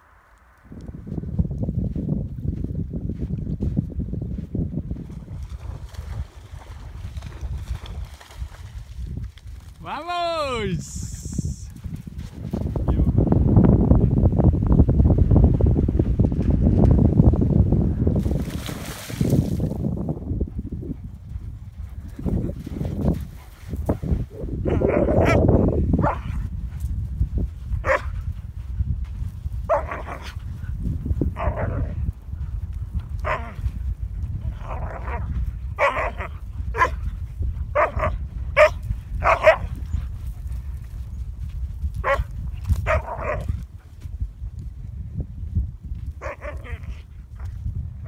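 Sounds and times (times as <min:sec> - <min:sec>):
low rumble: 0:00.0 - 0:03.0
dog barking: 0:27.8 - 0:28.1, 0:29.7 - 0:30.3, 0:35.8 - 0:37.0, 0:37.8 - 0:39.7, 0:42.0 - 0:43.5.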